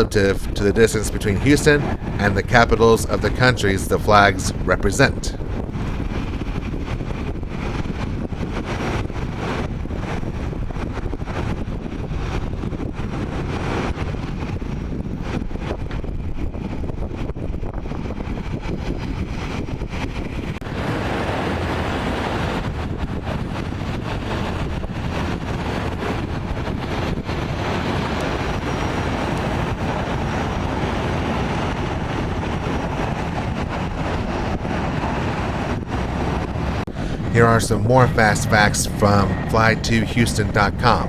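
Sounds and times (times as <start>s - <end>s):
jet engine roar: 0.0s - 6.1s, 20.6s - 41.0s
wind buffeting microphone: 0.0s - 41.0s.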